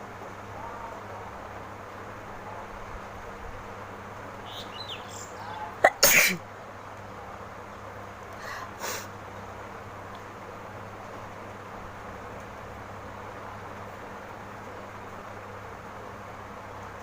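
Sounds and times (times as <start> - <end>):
woman sneezing: 5.8 - 6.4
faint breathy sound: 8.4 - 9.1.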